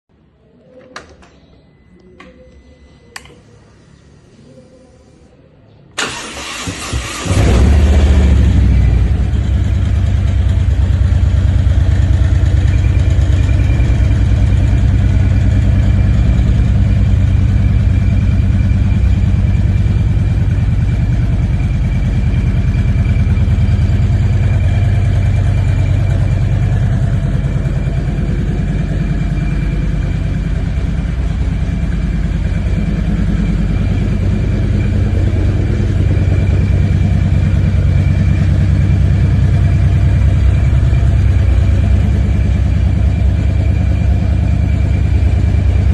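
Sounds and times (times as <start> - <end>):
motorcycle engine idling: 7.9 - 45.9.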